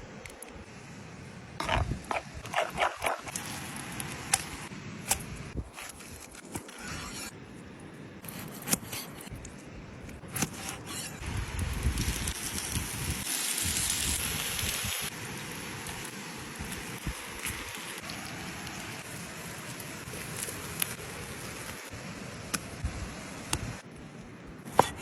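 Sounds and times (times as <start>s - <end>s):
fire hissing: 10.7s - 23.8s
wood fire crackling and popping: 11.5s - 22.7s.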